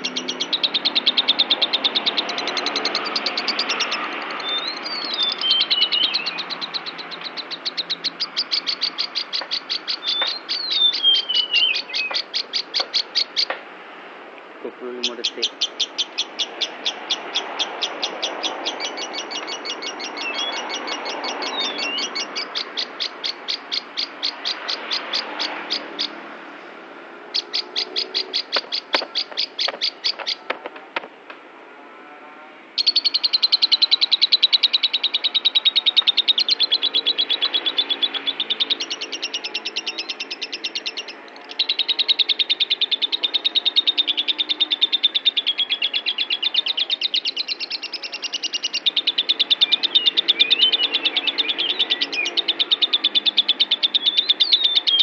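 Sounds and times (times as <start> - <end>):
lovebird chirping chatter: 0.0 - 13.6, 14.6 - 26.2, 27.3 - 30.6, 32.8 - 55.0.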